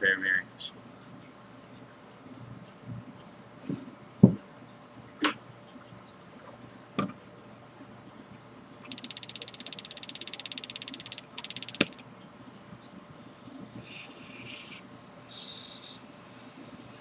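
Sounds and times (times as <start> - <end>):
fast mechanical clicking: 8.9 - 12.0.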